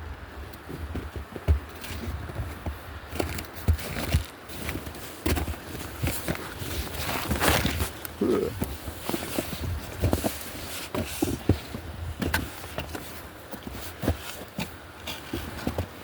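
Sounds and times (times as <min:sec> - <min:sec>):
footsteps on rough trail: 0:00.1 - 0:16.0
scraping crunch: 0:03.2 - 0:15.9.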